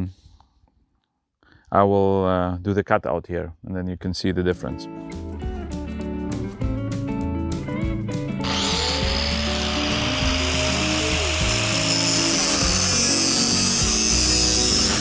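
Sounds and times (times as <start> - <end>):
background music: 4.5 - 15.0
power tool cutting steel bars: 8.4 - 15.0.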